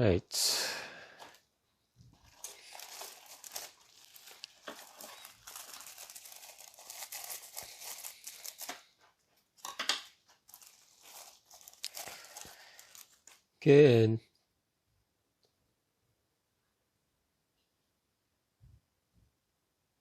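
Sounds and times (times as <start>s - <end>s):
plastic packaging crinkling: 2.1s - 9.0s, 9.6s - 13.4s.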